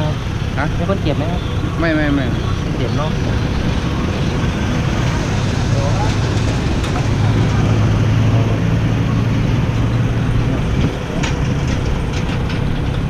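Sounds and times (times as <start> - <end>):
vehicle engine running: 0.0 - 13.0
wind noise on microphone: 6.3 - 13.0.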